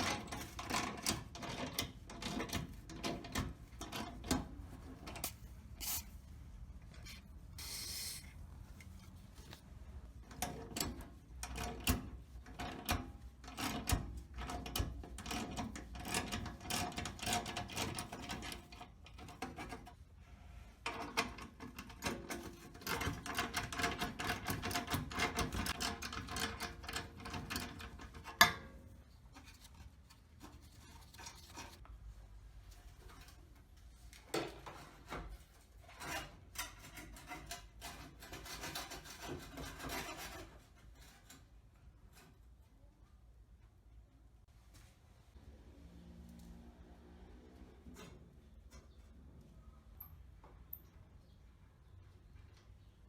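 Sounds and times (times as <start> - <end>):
scraping on metal: 34.8 - 42.2.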